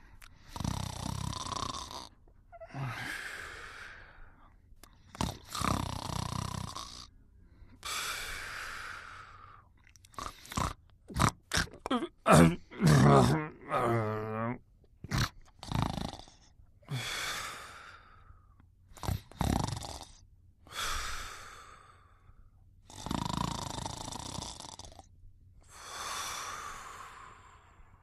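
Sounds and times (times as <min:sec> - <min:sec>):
cartoon snoring with whistle: 0:00.4 - 0:02.9, 0:05.1 - 0:07.1, 0:12.4 - 0:16.4, 0:19.0 - 0:20.2, 0:22.9 - 0:25.0.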